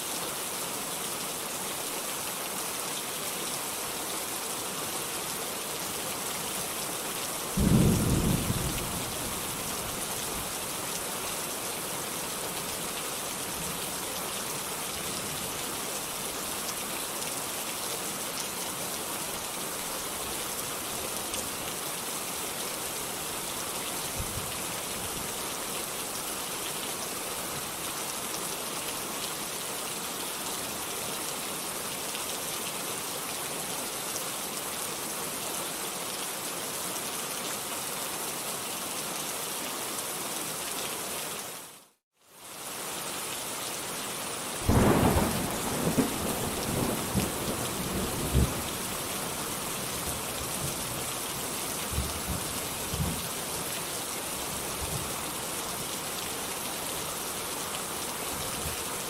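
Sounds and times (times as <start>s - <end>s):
heavy rain hissing: 42.5s - 59.0s.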